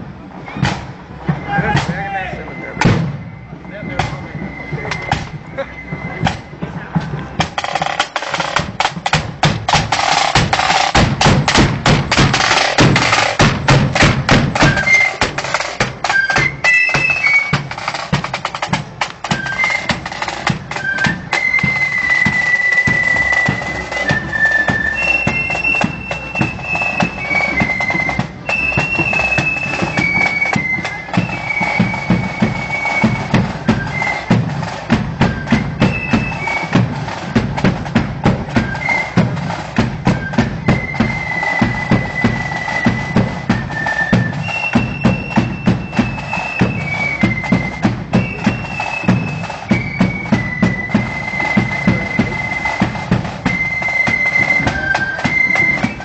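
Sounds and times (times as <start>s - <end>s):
flutes playing a tune: 0.1s - 56.0s
snare drums rattling: 0.5s - 56.0s
bass drum beat: 2.8s - 16.0s, 51.8s - 53.4s.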